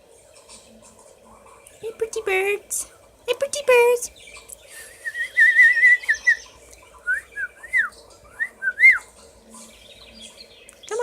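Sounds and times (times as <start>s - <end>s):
person whistling: 5.0s - 6.1s.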